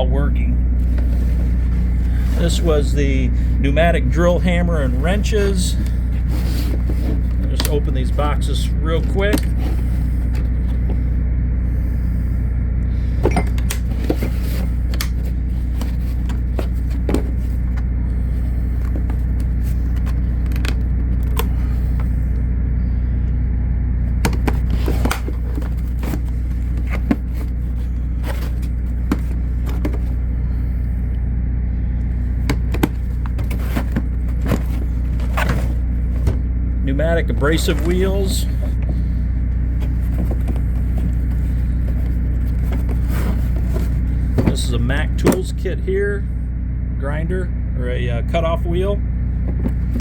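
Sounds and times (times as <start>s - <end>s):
steady low hum: 0.0s - 50.0s
tool cases clicking and knocking: 13.2s - 17.6s, 32.4s - 36.4s.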